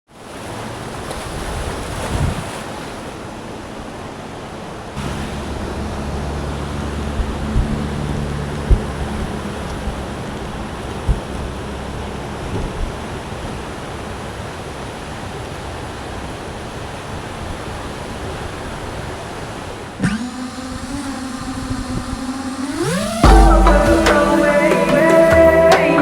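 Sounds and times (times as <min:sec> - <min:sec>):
electronic music: 0:20.0 - 0:26.0.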